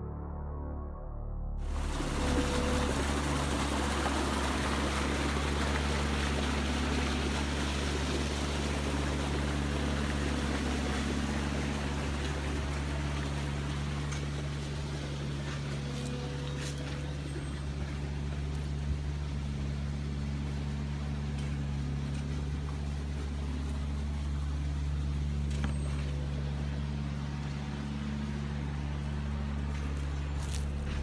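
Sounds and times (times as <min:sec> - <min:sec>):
low machine hum: 0:00.0 - 0:31.0
flowing water rushing: 0:01.6 - 0:25.5.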